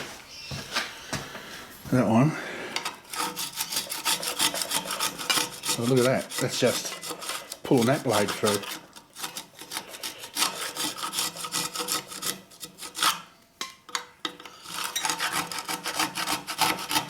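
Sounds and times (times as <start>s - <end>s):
hand saw rasping strokes: 2.7s - 13.3s, 14.3s - 17.0s.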